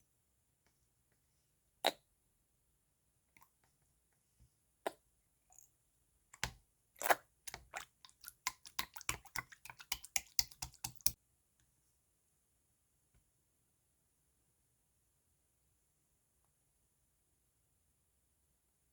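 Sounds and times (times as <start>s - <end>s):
slime squishing with wet clicks: 6.3s - 11.2s.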